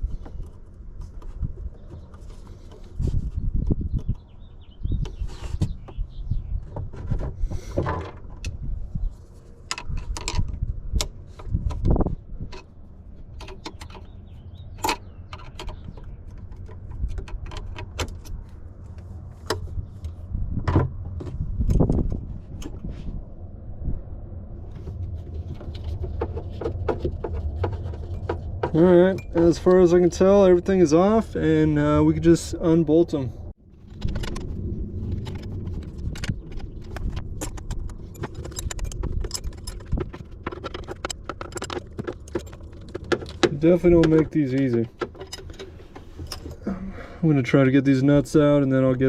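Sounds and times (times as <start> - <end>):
hand tools and metal parts clinking: 33.8 - 46.7.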